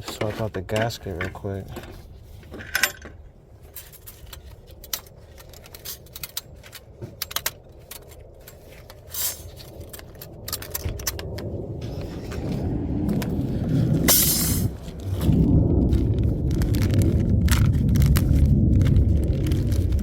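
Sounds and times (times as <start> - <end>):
metallic clicks and clinks: 2.6 - 11.4
low rumble: 7.6 - 20.0.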